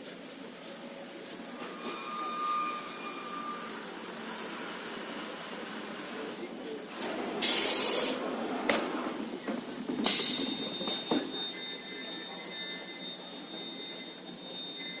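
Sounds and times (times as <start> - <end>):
faint machine whine: 0.6 - 5.7
loud hiss: 7.4 - 8.2.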